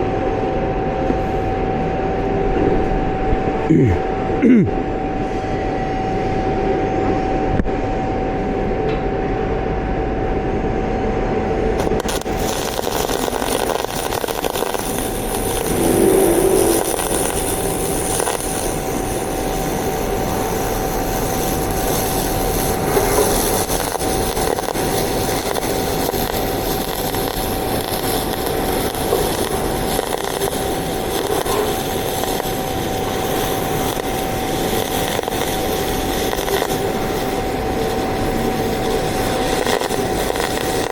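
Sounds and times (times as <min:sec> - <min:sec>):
welding arc crackling and hissing: 0:01.1 - 0:04.7, 0:11.6 - 0:40.9
welding machine hum: 0:11.3 - 0:40.9.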